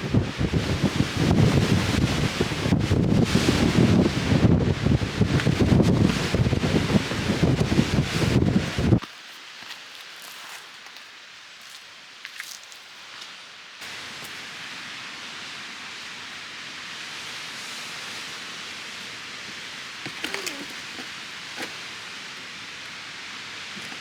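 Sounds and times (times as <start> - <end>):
strong wind rushing: 0.0 - 9.0.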